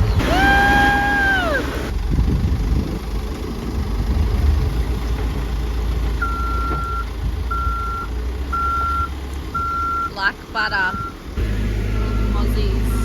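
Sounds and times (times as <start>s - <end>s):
vehicle engine rumbling: 0.0s - 13.0s
reversing alarm beeps: 6.2s - 10.2s, 11.9s - 13.0s.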